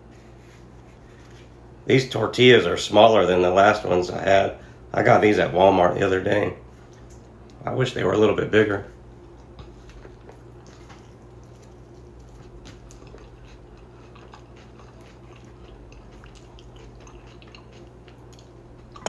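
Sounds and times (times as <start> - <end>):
person chewing: 9.3 - 19.0.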